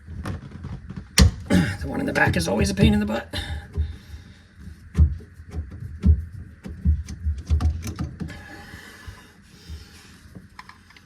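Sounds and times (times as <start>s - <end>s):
loud thumps: 1.1s - 4.1s.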